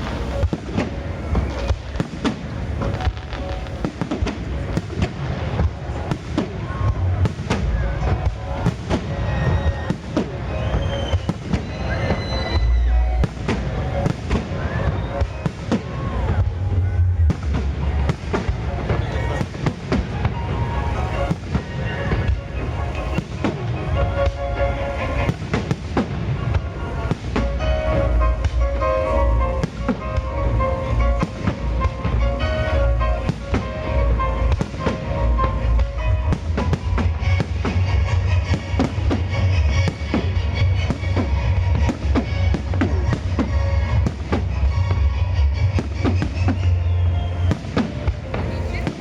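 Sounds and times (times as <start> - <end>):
fireworks bangs and crackling: 0.0 - 49.0
music playing: 0.0 - 49.0
loud music with heavy bass: 27.4 - 46.8.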